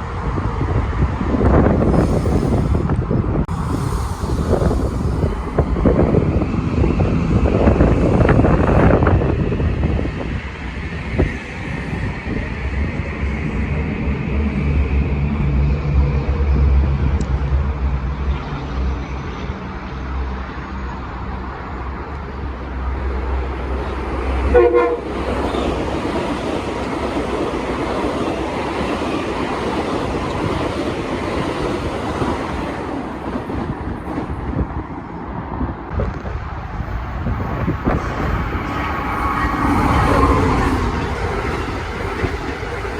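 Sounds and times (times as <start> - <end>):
train passing: 0.0 - 42.9
train horn toot: 24.5 - 25.7.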